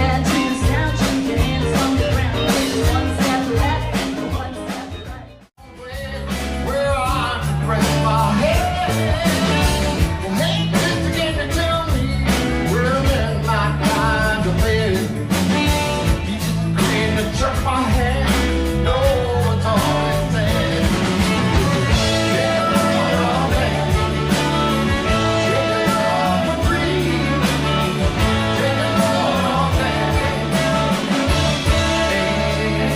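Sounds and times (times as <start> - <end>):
bass: 0.0 - 32.9
drums beat: 0.0 - 32.9
guitar: 0.0 - 32.9
person singing: 0.0 - 32.9.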